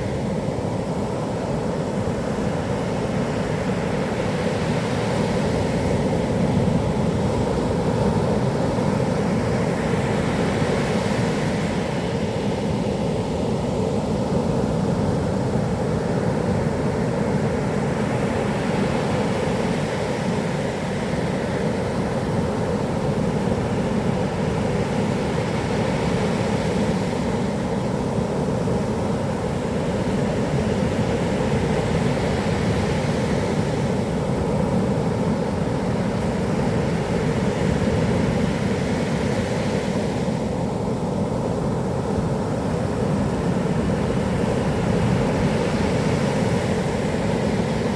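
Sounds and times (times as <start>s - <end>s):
surf breaking on a beach: 14.0s - 47.9s.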